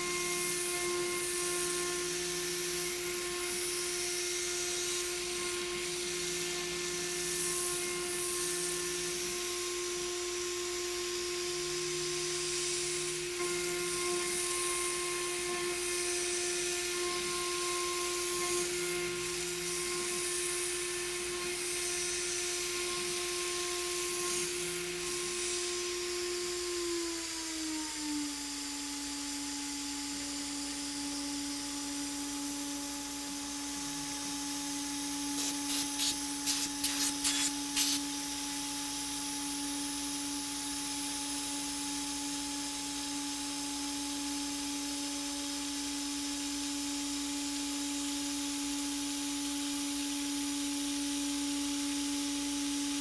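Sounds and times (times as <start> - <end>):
router spindle whine: 33.2 - 38.4.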